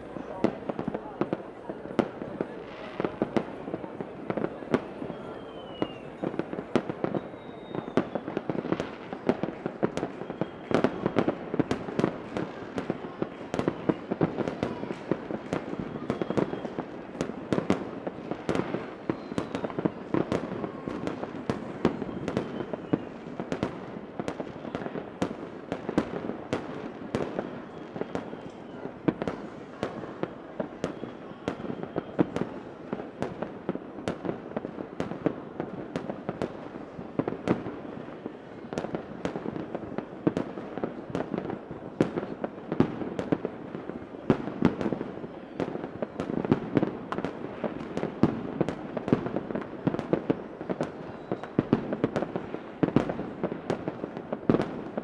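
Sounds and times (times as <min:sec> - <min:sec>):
fireworks crackling and banging: 0:00.0 - 0:55.0
fireworks rumble: 0:00.0 - 0:55.0
fireworks whistles: 0:04.4 - 0:33.0, 0:50.7 - 0:53.3.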